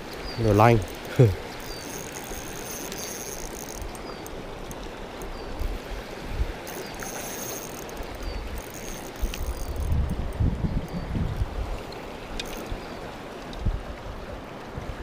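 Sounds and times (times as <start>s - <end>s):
wind rumble on microphone: 5.6s - 6.6s, 9.2s - 11.9s, 13.5s - 15.0s.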